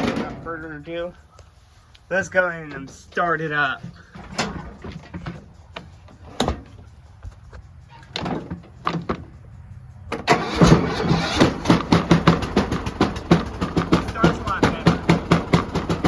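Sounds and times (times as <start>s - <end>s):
lawnmower engine running: 0.0s - 1.2s, 2.2s - 16.0s
electric starter cranking: 10.1s - 16.0s.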